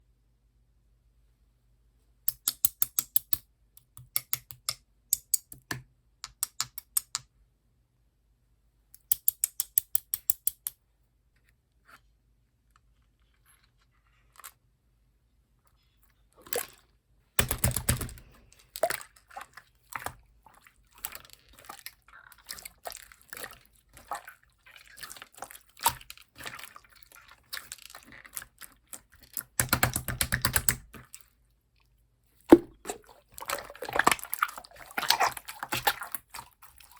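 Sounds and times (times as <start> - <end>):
slime crackling and squishing: 32.5 - 36.9.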